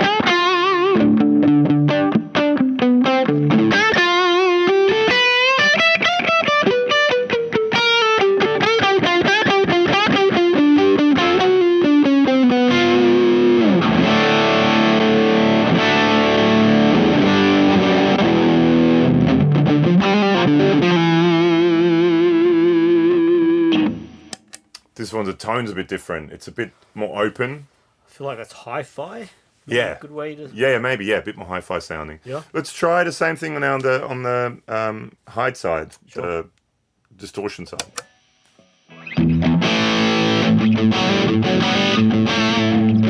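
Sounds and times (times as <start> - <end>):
overdriven electric guitar riff: 0.0 - 24.6, 37.8 - 43.0
strummed overdriven guitar chords: 0.0 - 24.6, 38.2 - 43.0.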